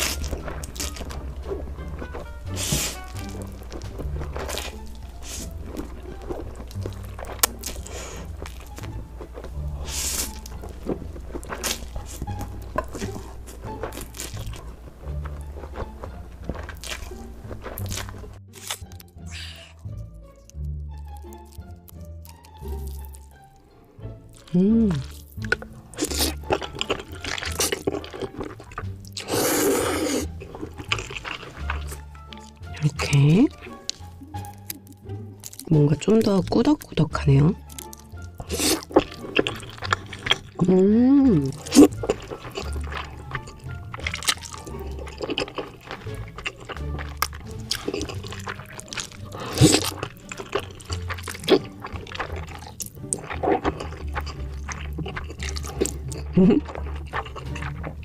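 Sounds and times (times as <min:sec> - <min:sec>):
wet eating noises: 0:00.0 - 0:58.0
person slurping noodles: 0:02.4 - 0:08.6, 0:09.5 - 0:14.6, 0:24.4 - 0:32.4, 0:38.2 - 0:40.6, 0:41.4 - 0:58.0.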